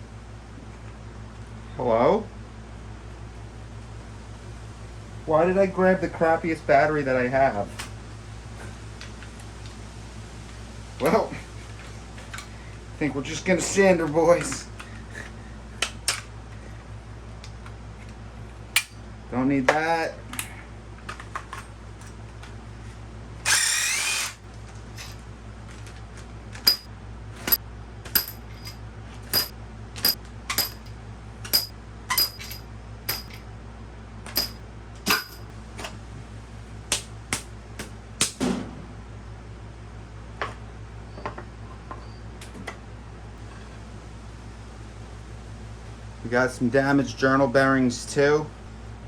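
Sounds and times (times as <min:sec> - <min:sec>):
cordless power tool whirring: 0:23.4 - 0:24.4
sharp metallic clicks and knocks: 0:26.6 - 0:33.4, 0:34.3 - 0:35.5.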